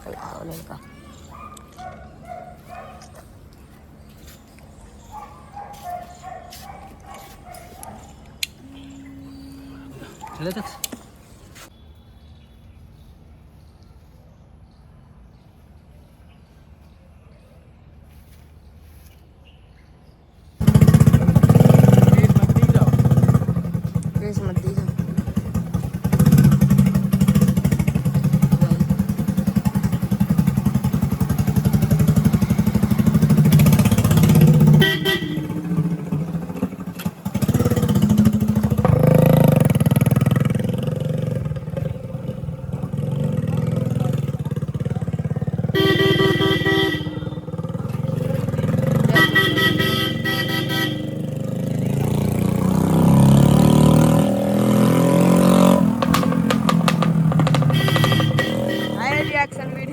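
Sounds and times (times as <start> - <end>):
vehicle horn honking: 8.6 - 10.2, 34.7 - 35.9, 45.6 - 47.7, 48.9 - 51.4, 57.4 - 59.9
motorcycle engine running: 20.6 - 59.9.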